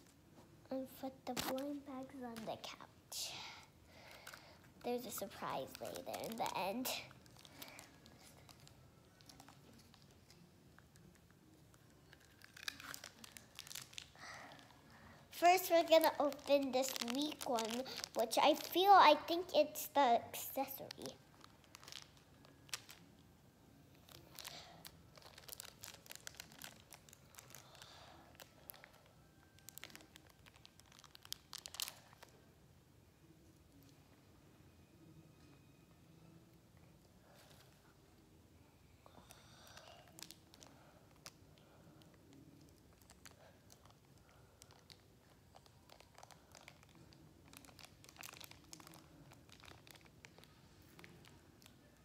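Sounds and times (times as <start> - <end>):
small clicks and crackles: 1.2 - 2.7, 3.3 - 18.9, 20.6 - 23.2, 23.9 - 32.4, 39.1 - 52.0
wrapper crinkling and tearing: 1.2 - 2.7, 3.4 - 23.2, 23.9 - 32.4, 39.7 - 52.0.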